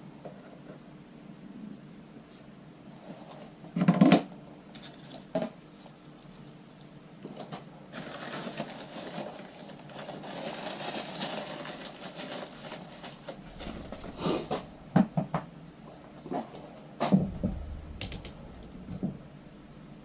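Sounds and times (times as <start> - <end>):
rubbing and scraping: 12.7 - 16.0
sharp knocks: 17.1 - 19.6.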